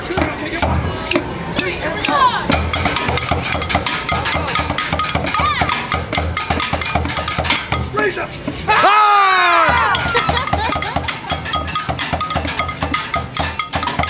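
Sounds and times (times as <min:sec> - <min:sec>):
voices over music: 0:00.0 - 0:02.9
upbeat music with drum beat: 0:00.0 - 0:14.0.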